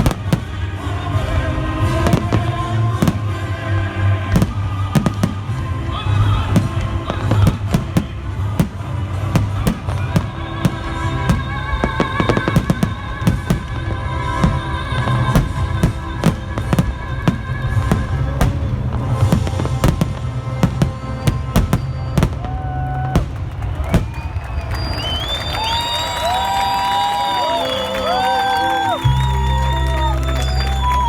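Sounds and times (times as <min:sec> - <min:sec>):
loud music with steady bass: 0:00.0 - 0:22.4, 0:28.8 - 0:31.0
fireworks bangs: 0:00.0 - 0:31.0.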